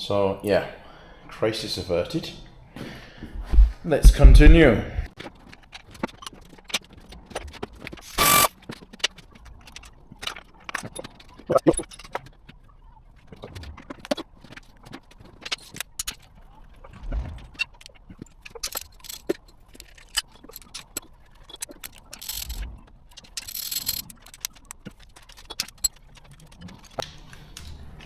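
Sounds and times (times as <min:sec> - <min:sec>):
tools and metal parts clinking: 0:05.4 - 0:12.4, 0:13.9 - 0:16.3, 0:17.5 - 0:27.7.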